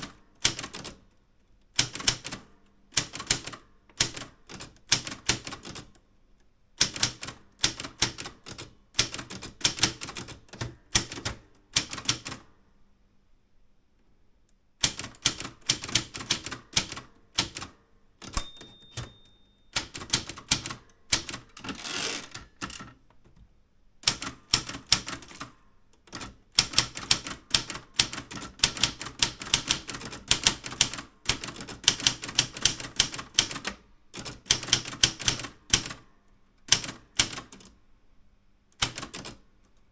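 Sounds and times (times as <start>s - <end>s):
typewriter keystrokes: 0.0s - 1.1s, 1.7s - 6.0s, 6.8s - 12.5s, 14.8s - 23.0s, 24.0s - 36.0s, 36.6s - 37.7s, 38.8s - 39.5s
typewriter bell ring: 18.3s - 20.2s, 21.7s - 22.8s
typewriter carriage sliding: 21.5s - 23.0s.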